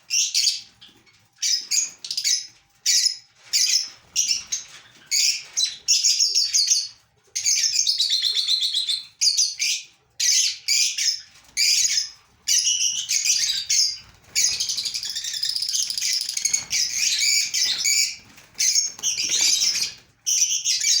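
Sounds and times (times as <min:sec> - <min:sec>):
lovebirds chattering shrilly: 0:07.4 - 0:21.0.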